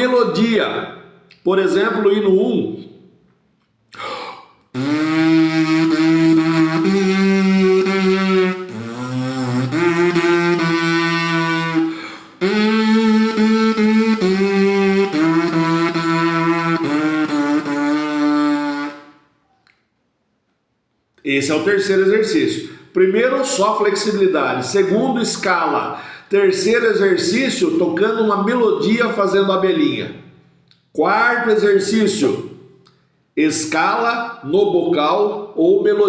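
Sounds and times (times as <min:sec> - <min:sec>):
lip buzzing slow melody: 0:04.7 - 0:19.3.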